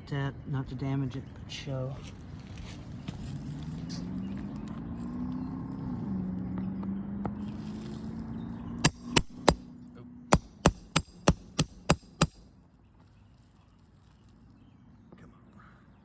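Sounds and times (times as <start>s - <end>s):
hammer tapping on shingles: 8.8s - 9.6s, 10.4s - 12.4s.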